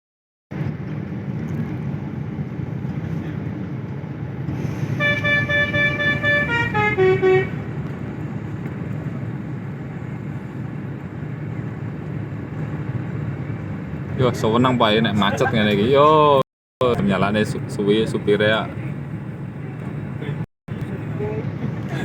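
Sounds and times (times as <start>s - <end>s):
engine and traffic rumble: 0.5s - 22.0s
bus musical horn: 4.8s - 7.8s.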